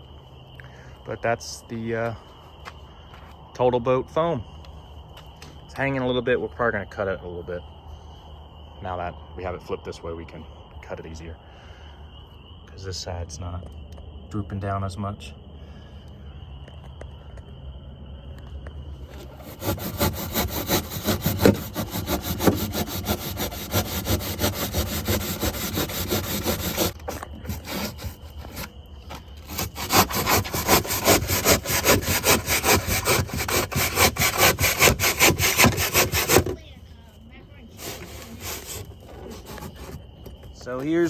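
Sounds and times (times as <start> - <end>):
saw cutting through foam: 19.2 - 28.7, 29.4 - 36.6, 37.8 - 40.0.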